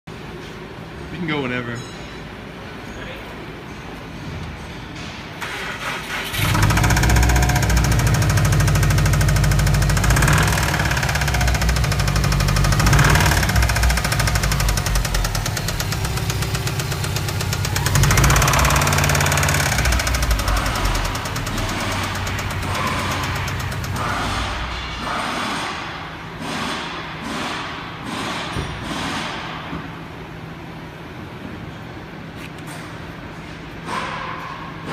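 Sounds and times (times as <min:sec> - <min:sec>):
starter cranking engine: 0:05.4 - 0:24.8
engine running with rapid knock: 0:06.2 - 0:25.1.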